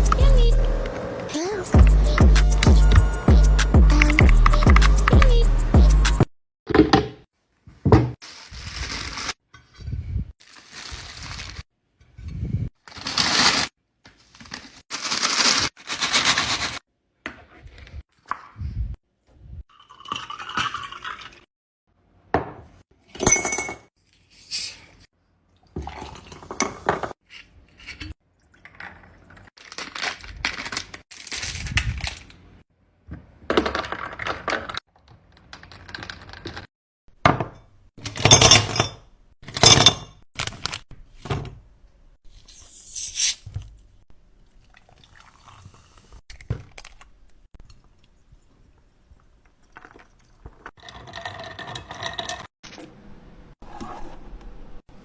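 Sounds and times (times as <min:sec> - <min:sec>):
objects knocking and clinking: 0:37.2 - 0:40.2.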